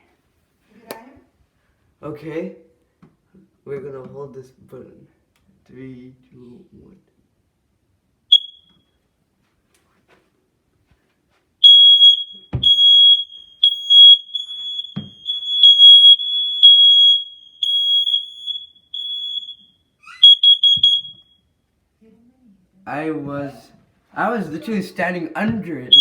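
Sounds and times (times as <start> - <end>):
smoke alarm beeping: 8.3 - 9.0, 11.6 - 21.6.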